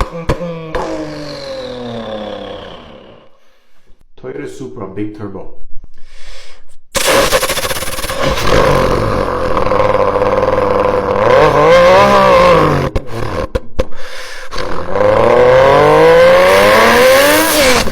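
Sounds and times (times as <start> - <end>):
man imitating car engine: 0.0 - 3.3, 7.0 - 13.7, 14.4 - 17.9.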